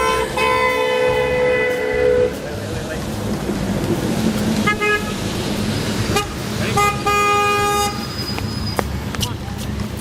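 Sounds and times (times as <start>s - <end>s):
car horns honking: 0.0s - 2.5s, 4.6s - 5.3s, 6.0s - 8.8s
traffic noise: 0.0s - 10.0s.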